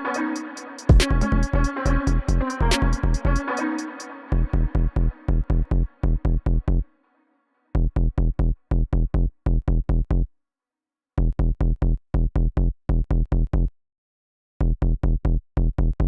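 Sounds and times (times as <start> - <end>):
punchy drum machine hits: 0.8 - 3.4.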